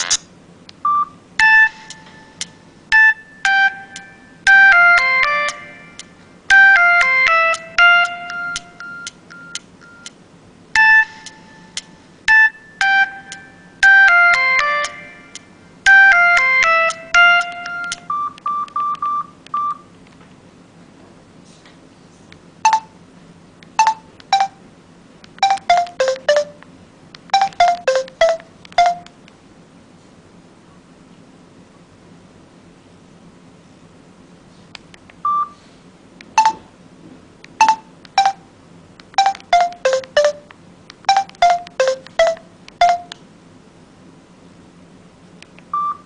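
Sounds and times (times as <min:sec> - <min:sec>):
phone keypad beeps: 0:00.8 - 0:05.6, 0:06.5 - 0:10.1, 0:10.8 - 0:15.0, 0:15.9 - 0:19.8, 0:22.6 - 0:22.9, 0:23.8 - 0:24.6, 0:25.4 - 0:26.6, 0:27.3 - 0:29.1, 0:35.2 - 0:35.6, 0:36.4 - 0:36.6, 0:37.6 - 0:38.4, 0:39.2 - 0:43.2, 0:45.7 - 0:46.0.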